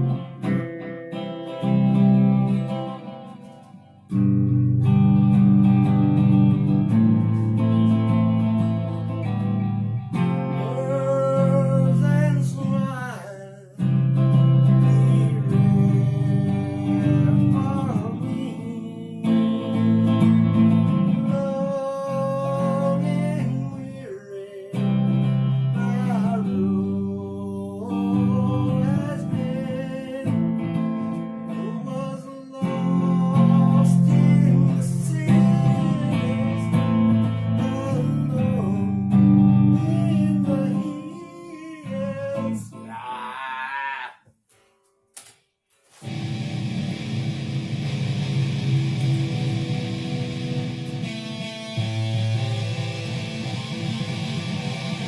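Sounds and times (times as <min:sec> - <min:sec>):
acoustic guitar strumming: 0:00.0 - 0:27.3, 0:27.9 - 0:44.7, 0:46.0 - 0:55.0
person singing: 0:10.2 - 0:44.2.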